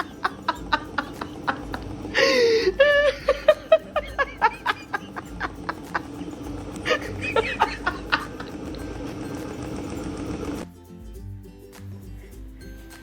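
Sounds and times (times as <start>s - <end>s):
person laughing: 0.0s - 9.3s.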